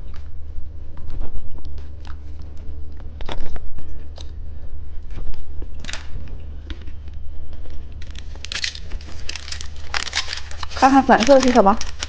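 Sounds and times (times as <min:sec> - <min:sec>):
low hum: 0:00.0 - 0:12.0
plastic rustles: 0:06.7 - 0:12.0
plastic packaging crinkling: 0:07.8 - 0:12.0.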